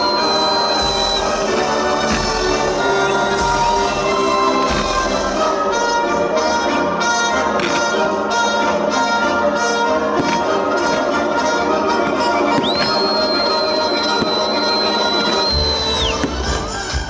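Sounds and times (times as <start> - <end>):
fireworks bangs: 0.0 - 5.5, 12.5 - 17.0
rising fireworks whistles: 0.0 - 5.9, 12.2 - 17.0
orchestral music led by brass: 0.0 - 17.0.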